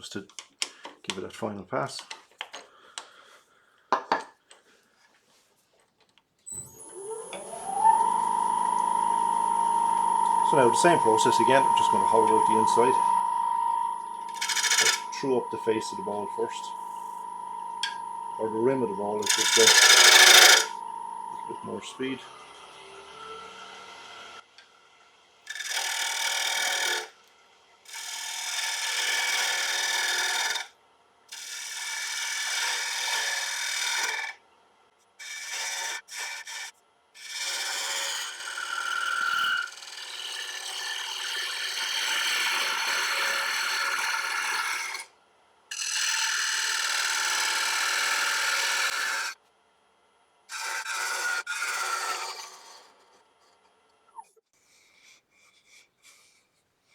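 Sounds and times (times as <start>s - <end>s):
gouge cutting wood on a lathe: 6.7s - 24.4s, 25.5s - 27.2s, 27.8s - 30.7s, 31.3s - 34.4s, 35.2s - 45.1s, 45.7s - 49.4s, 50.5s - 53.2s.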